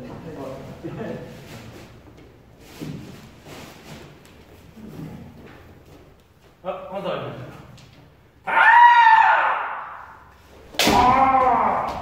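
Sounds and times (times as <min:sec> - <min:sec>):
bamboo sword strikes: 0:10.7 - 0:11.6.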